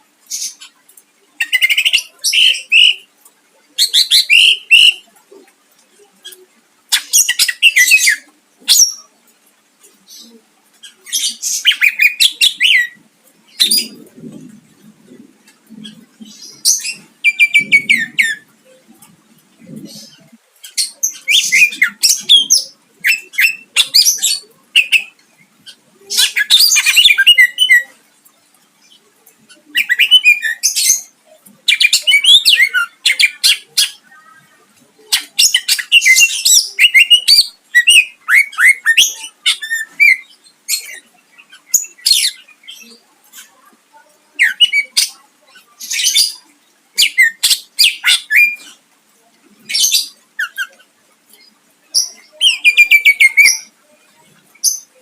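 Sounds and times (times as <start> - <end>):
bird singing in varied bursts: 50.0 - 53.8.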